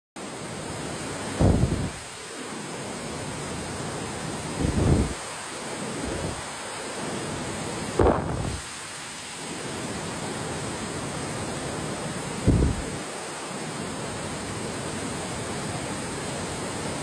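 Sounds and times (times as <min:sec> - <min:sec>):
waterfall rushing: 0:00.3 - 0:17.0
wind buffeting the microphone: 0:01.4 - 0:02.1, 0:04.5 - 0:05.2, 0:06.0 - 0:06.5, 0:08.0 - 0:08.7, 0:12.4 - 0:13.0.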